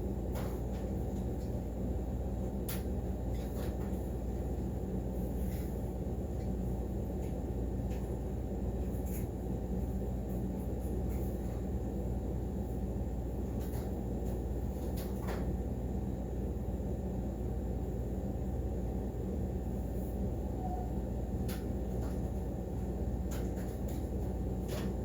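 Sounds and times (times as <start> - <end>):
low background hum: 0.0 - 25.0.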